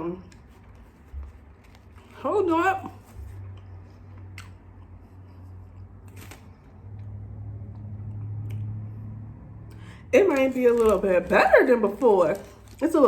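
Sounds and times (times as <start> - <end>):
person chewing crispy food: 3.3 - 6.8.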